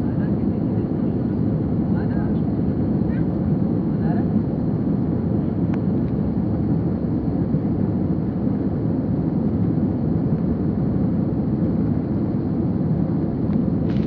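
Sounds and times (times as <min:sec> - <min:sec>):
jet engines and rushing air: 0:06.2 - 0:14.0.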